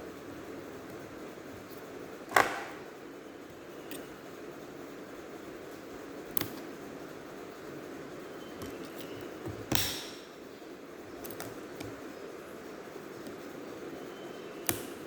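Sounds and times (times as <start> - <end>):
steady low hiss: 0.0 - 15.0
sharp plastic snap: 9.7 - 10.2, 14.6 - 15.0.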